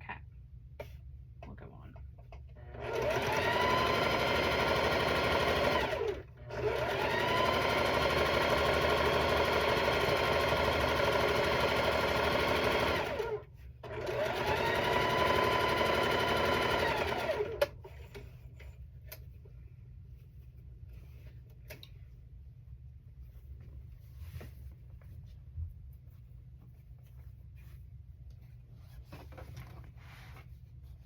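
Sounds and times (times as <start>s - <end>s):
electric sewing machine stitching: 2.6s - 17.9s.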